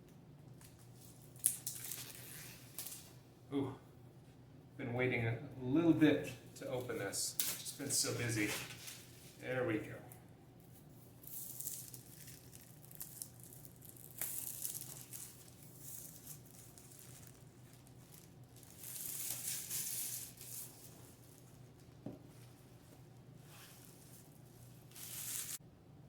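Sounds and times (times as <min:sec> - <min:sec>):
plastic shrink wrap crinkling: 0:00.6 - 0:03.2, 0:07.3 - 0:09.4, 0:11.2 - 0:25.6.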